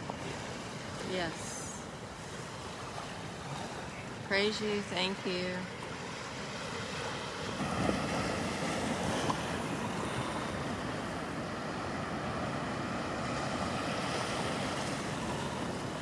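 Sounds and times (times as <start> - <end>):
ocean surf washing on beach: 0.0 - 16.0
wind on microphone: 5.0 - 16.0.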